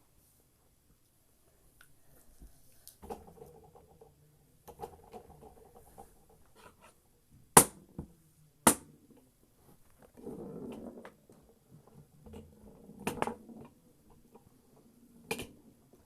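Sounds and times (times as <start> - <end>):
ball rolling on plastic table: 3.0 - 6.9, 10.0 - 16.0.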